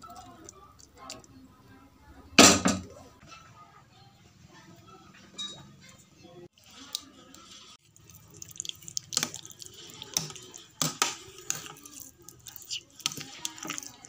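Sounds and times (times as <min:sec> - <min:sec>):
water dripping and splashing: 0:07.8 - 0:14.0.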